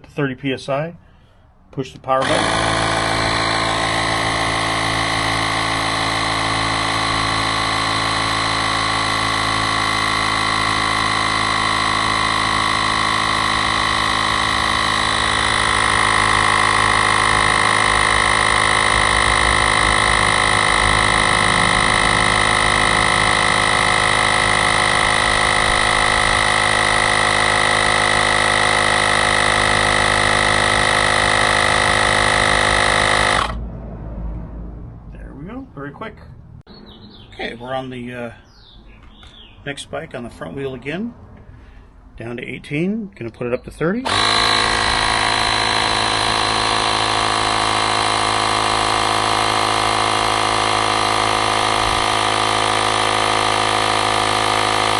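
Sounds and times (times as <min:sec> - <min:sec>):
tire inflator compressor running: 0:02.1 - 0:33.6, 0:44.0 - 0:54.9.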